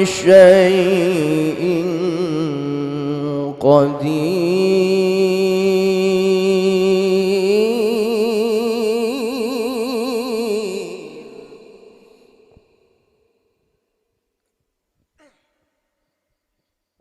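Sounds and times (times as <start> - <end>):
person reciting melodically: 0.0 - 12.9.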